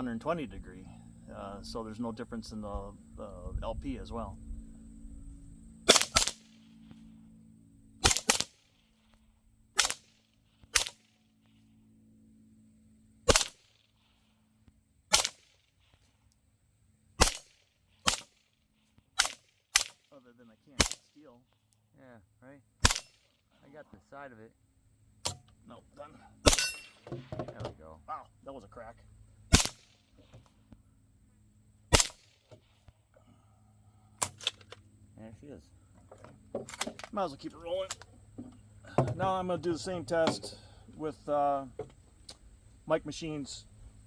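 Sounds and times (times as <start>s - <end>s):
suppressed gunshots: 5.8s - 6.7s, 8.0s - 8.8s, 9.8s - 11.2s, 13.3s - 13.7s, 15.1s - 15.6s, 17.2s - 18.5s, 19.2s - 20.0s, 20.8s - 21.1s, 22.8s - 23.3s, 26.4s - 27.2s, 29.5s - 30.0s, 31.9s - 32.5s.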